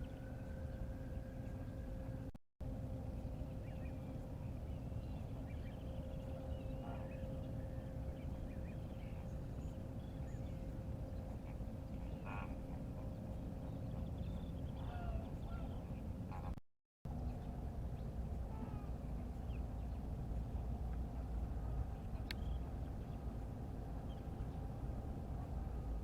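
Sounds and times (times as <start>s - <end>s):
faint steady hum: 0.0s - 26.0s
low background rumble: 0.0s - 26.0s
flamingos honking and chattering: 5.4s - 16.6s, 18.4s - 19.6s.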